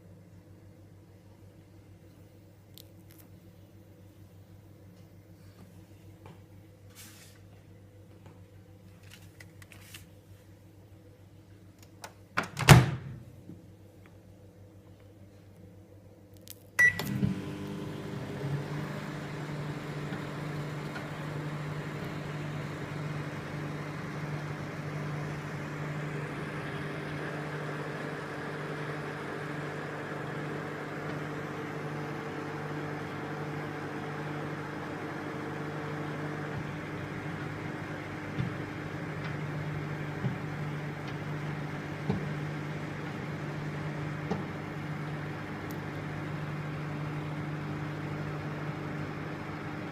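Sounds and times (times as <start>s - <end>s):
microwave humming: 16.7s - 49.9s
microwave beep: 16.8s - 18.1s.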